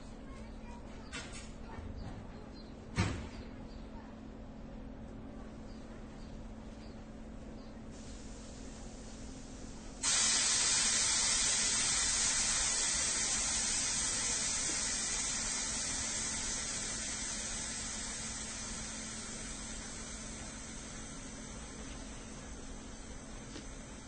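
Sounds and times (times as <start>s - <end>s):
train letting off steam: 7.9s - 24.0s.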